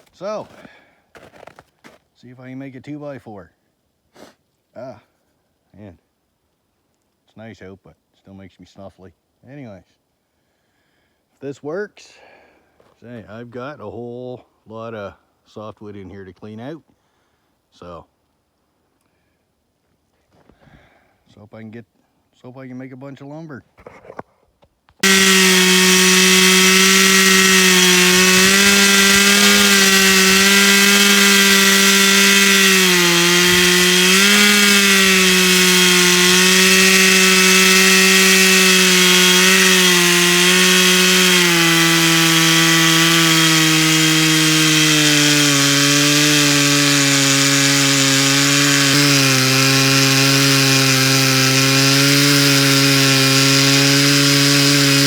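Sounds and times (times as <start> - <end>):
chainsaw cutting log: 0.0 - 2.0, 25.0 - 55.0.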